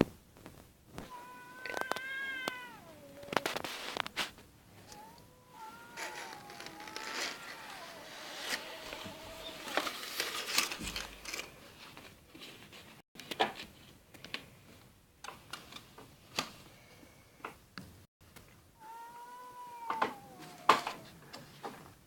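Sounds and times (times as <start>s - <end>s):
cat yowling: 1.1s - 3.6s, 4.8s - 10.1s, 18.8s - 21.2s.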